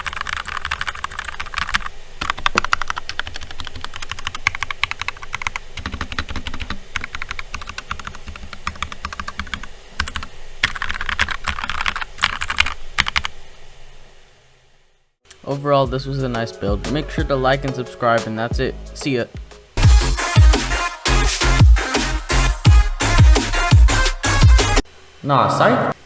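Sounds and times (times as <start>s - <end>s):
mechanical keyboard typing: 0.0s - 13.3s.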